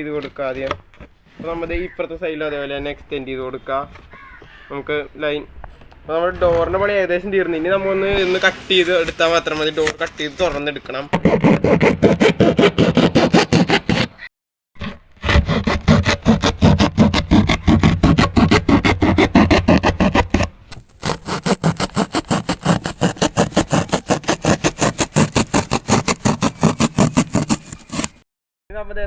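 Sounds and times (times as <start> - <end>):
knife sawing through cardboard: 7.6 - 28.2.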